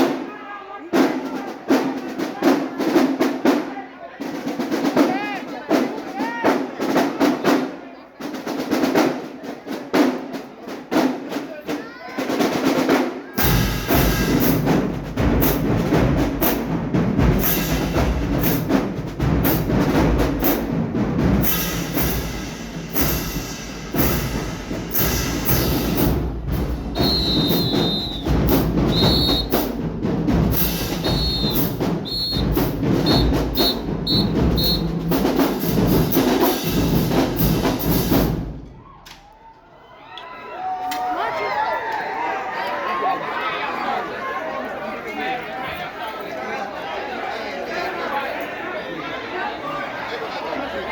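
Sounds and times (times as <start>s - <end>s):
marching band playing: 0.0s - 39.2s
high whistle-like tones: 27.0s - 29.6s, 31.0s - 34.9s.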